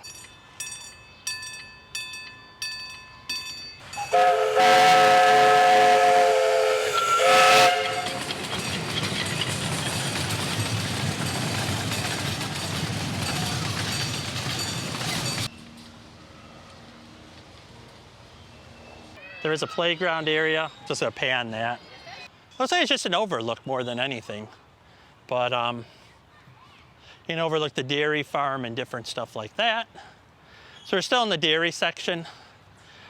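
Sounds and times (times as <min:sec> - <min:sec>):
railroad crossing bell ringing: 0:00.0 - 0:05.6, 0:07.0 - 0:15.6
train rumbling on rails: 0:02.9 - 0:19.2
train whistle blast: 0:03.9 - 0:08.4.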